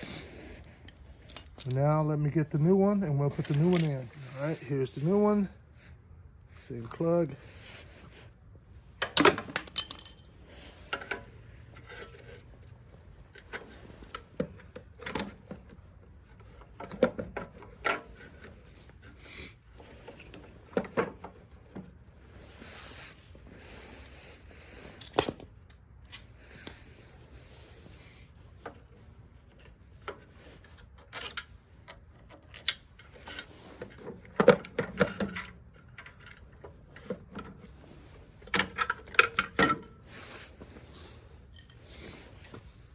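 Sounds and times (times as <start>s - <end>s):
clicks of small parts: 3.4s - 4.0s, 31.0s - 36.4s.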